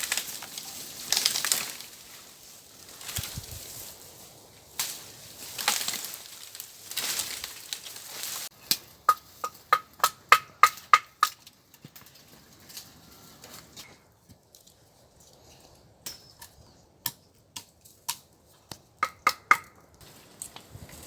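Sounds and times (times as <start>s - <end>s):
dry brush crunching and rustling: 0.0s - 9.5s, 11.4s - 15.8s, 20.0s - 21.0s
axe chopping wood: 8.7s - 11.4s, 17.0s - 19.8s.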